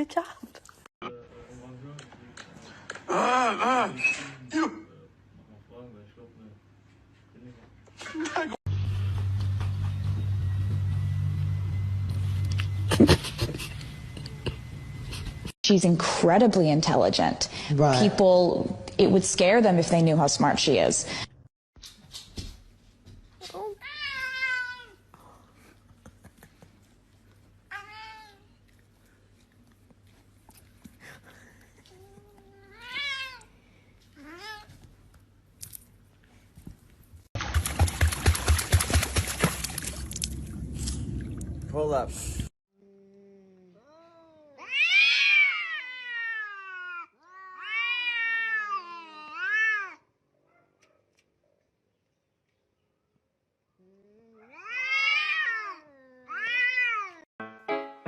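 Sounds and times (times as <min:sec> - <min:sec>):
cat meowing: 0:43.8 - 0:50.0, 0:54.2 - 0:57.2.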